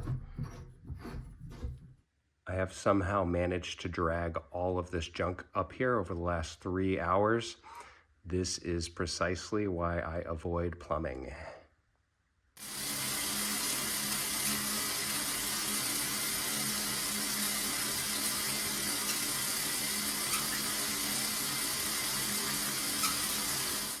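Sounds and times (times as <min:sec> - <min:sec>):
shower water spraying: 0:12.6 - 0:24.0.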